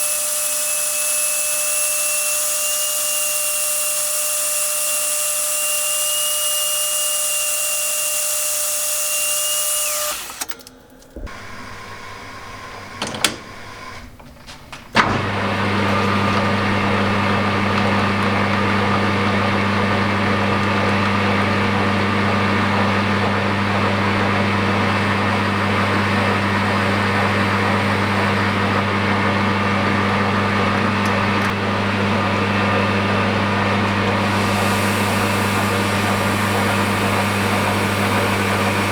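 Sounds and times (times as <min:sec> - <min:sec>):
grinder high whine: 0:00.0 - 0:14.1, 0:15.0 - 0:38.9
electric motor deep hum: 0:00.0 - 0:38.9
clicks: 0:10.1 - 0:21.7.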